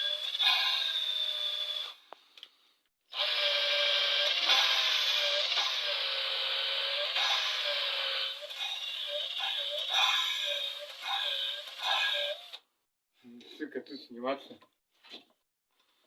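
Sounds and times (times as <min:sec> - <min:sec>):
electric drill whine: 0:00.0 - 0:02.0, 0:03.1 - 0:12.6.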